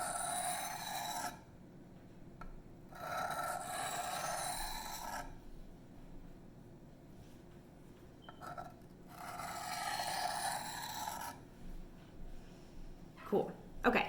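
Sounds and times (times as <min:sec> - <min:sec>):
knife scraping on sharpening stone: 0:00.0 - 0:01.4, 0:03.0 - 0:05.3, 0:08.3 - 0:11.4.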